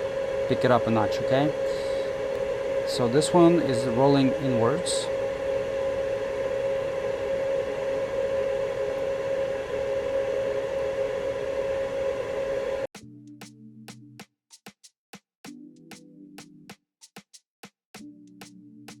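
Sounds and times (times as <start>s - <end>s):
electric fan whirring: 0.0s - 12.9s
electronic music with drum beat: 12.9s - 14.8s, 15.5s - 17.3s, 18.0s - 19.0s.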